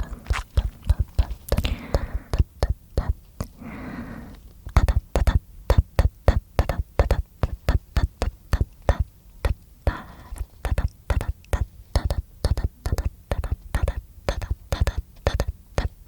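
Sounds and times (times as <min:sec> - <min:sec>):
tongue clicks and pops: 0:00.2 - 0:03.5, 0:10.6 - 0:15.9.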